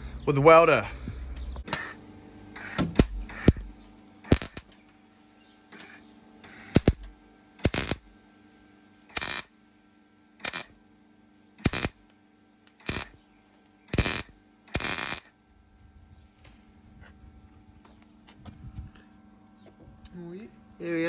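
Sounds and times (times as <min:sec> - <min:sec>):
welder arc bursts: 0:01.6 - 0:02.0, 0:02.6 - 0:04.8, 0:05.7 - 0:08.1, 0:09.1 - 0:09.5, 0:10.4 - 0:10.7, 0:11.6 - 0:12.0, 0:12.7 - 0:13.2, 0:13.9 - 0:15.3.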